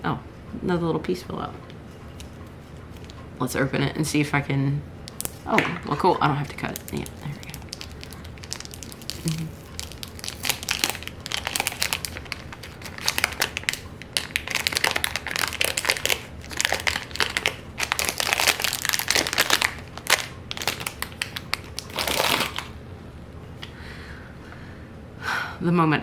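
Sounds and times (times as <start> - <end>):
plastic packaging crinkling: 2.1 - 3.2, 5.1 - 22.8.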